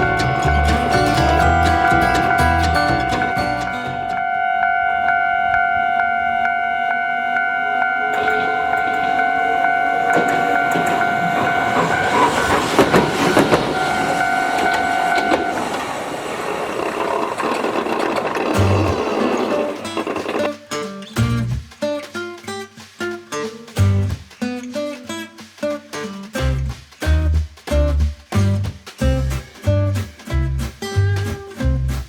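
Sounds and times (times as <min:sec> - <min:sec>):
tram wheels clattering over rails: 0:00.0 - 0:04.3, 0:07.9 - 0:20.7
two-tone crossing bell clanging: 0:00.0 - 0:20.5.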